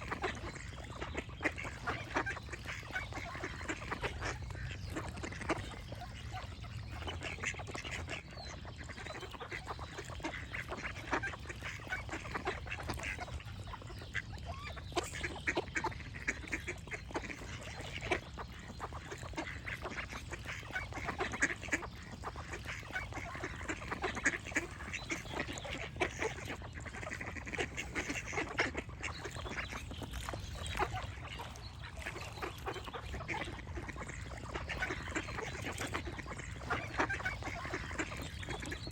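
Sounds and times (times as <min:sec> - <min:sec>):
ducks quacking: 0:00.0 - 0:38.9.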